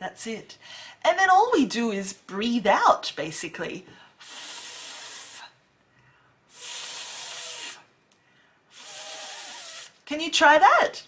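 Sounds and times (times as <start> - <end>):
woman making a hissing f sound: 4.2 - 5.6, 6.5 - 7.9, 8.7 - 10.0.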